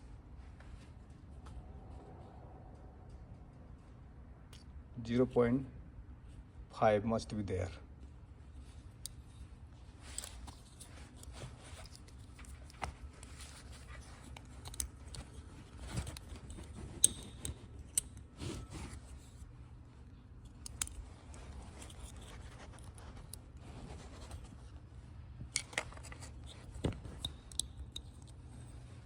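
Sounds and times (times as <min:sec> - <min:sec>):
low hum: 0:00.0 - 0:05.0
metal parts clicking and scraping: 0:08.9 - 0:19.4, 0:20.4 - 0:23.4, 0:25.5 - 0:28.6.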